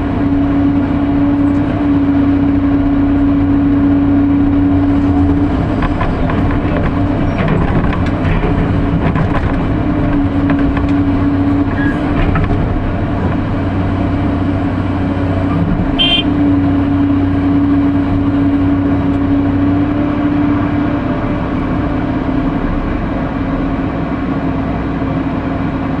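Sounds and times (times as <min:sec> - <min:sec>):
excavator diesel engine running: 0:00.0 - 0:26.0
clanks and scrapes of digging: 0:05.0 - 0:11.0.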